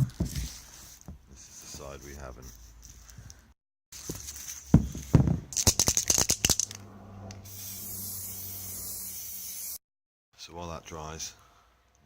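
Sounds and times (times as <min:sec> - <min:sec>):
aerosol can ball rattling: 0:05.5 - 0:06.8
spray can hissing: 0:07.5 - 0:09.8.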